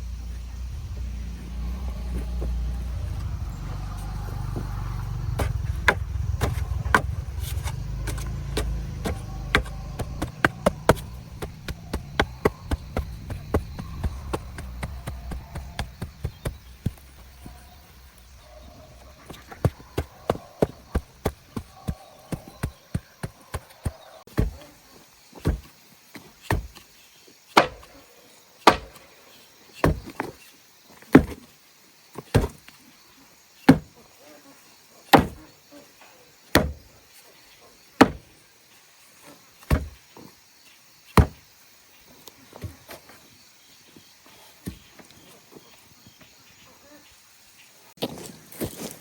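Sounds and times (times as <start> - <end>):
blade chopping: 5.1 - 21.7, 27.6 - 27.9, 28.7 - 29.0.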